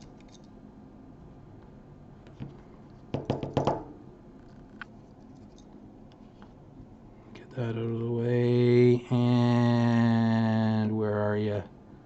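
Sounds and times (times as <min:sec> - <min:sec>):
hard objects knocking on a mat: 0:03.1 - 0:04.0.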